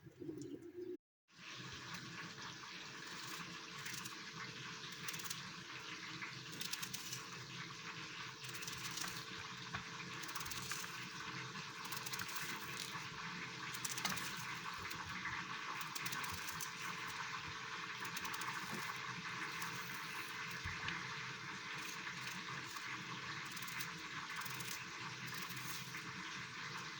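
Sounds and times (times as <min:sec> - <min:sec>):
food sizzling in hot oil: 0:01.4 - 0:26.9
oil crackling and popping: 0:01.5 - 0:26.9.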